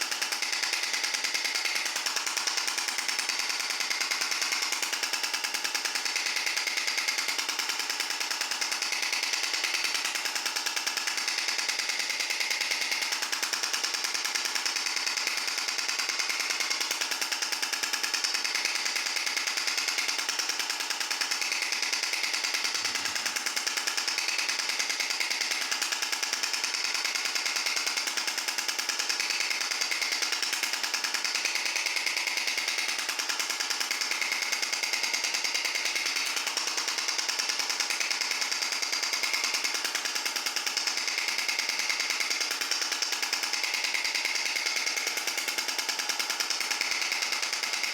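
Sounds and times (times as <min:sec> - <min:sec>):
shock wave device rapid pulses: 0:00.0 - 0:47.9.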